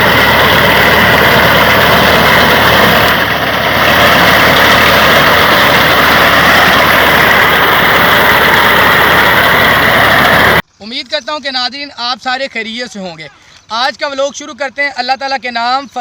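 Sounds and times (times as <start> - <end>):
tractor engine running: 0.0 - 10.6.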